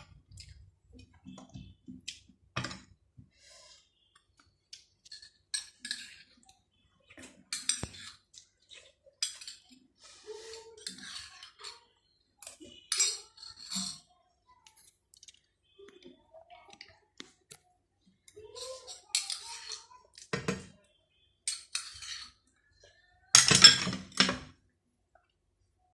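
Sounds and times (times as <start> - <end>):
cutlery clatter: 1.0 - 2.9, 4.8 - 6.5, 7.1 - 9.8, 10.6 - 14.1, 18.6 - 20.7, 21.4 - 22.4, 23.3 - 24.6
cutlery clinking on a plate: 5.0 - 6.4, 7.2 - 9.8, 12.4 - 14.1, 21.4 - 22.4, 23.3 - 24.5.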